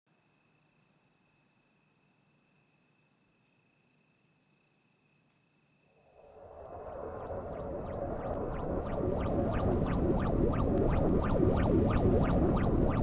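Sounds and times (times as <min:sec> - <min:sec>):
rising whooshing noise: 0:06.2 - 0:13.0.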